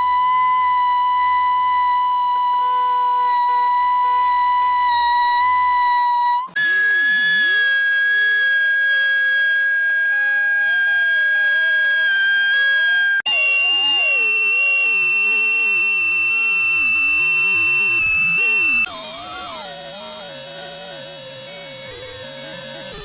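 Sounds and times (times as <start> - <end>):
high electronic beeps: 6.6 - 23.0.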